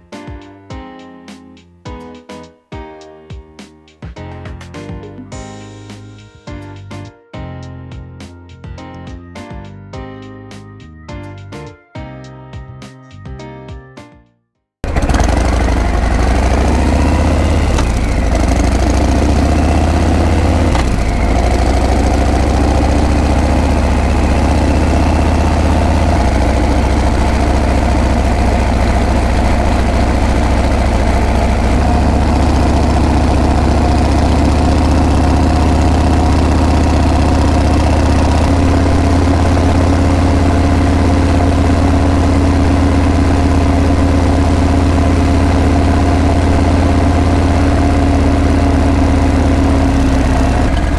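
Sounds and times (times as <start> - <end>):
motorcycle engine running: 14.8 - 50.9.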